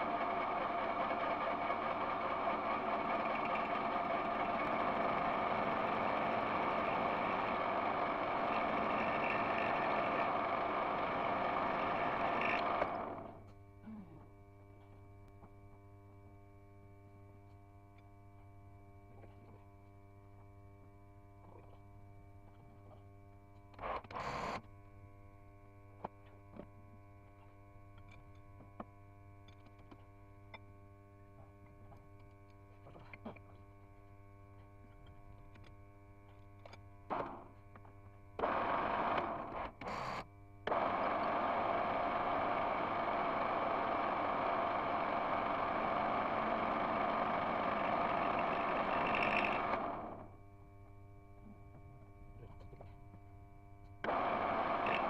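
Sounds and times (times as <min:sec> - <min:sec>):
lathe running: 0:00.0 - 0:13.3, 0:40.7 - 0:50.2, 0:54.0 - 0:55.0.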